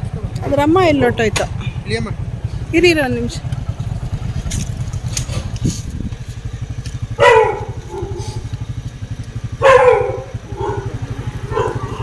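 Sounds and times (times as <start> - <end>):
low engine-like rumble: 0.0 - 12.0
loud animal calls: 9.6 - 12.0.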